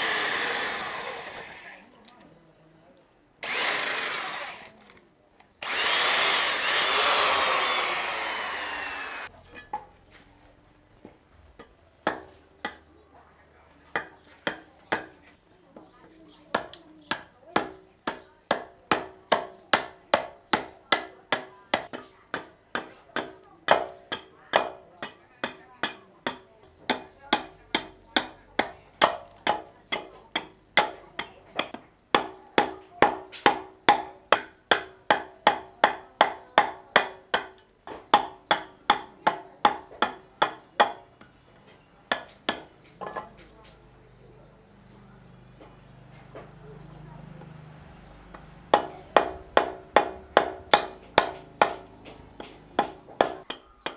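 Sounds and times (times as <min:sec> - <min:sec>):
hand tool striking wood: 0:05.6 - 0:09.3, 0:11.6 - 0:12.9, 0:14.0 - 0:15.2, 0:16.6 - 0:41.4, 0:42.1 - 0:43.2, 0:48.7 - 0:53.9.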